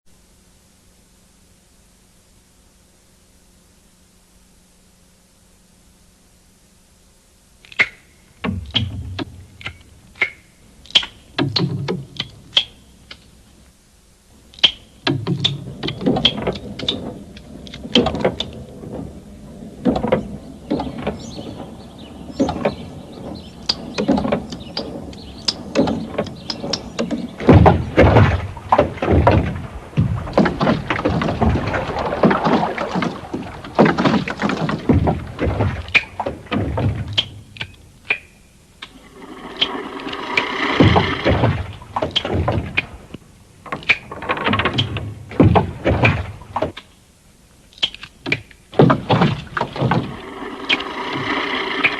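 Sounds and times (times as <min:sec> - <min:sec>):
clattering knocks and clicks: 0:15.0 - 0:21.8, 0:38.8 - 0:46.9, 0:48.2 - 0:51.9.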